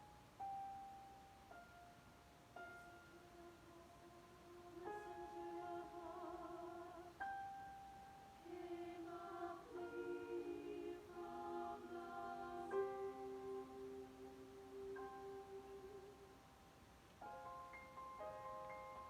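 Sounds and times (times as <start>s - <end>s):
choir singing quietly: 2.6s - 16.8s.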